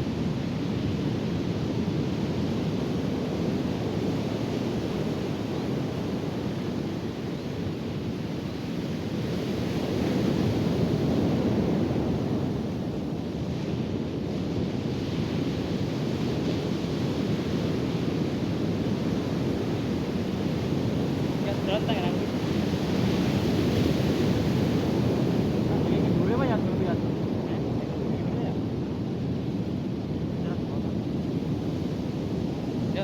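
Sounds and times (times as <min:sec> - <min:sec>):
wind buffeting microphone: 0:00.0 - 0:33.0
ocean surf breaking: 0:00.4 - 0:33.0.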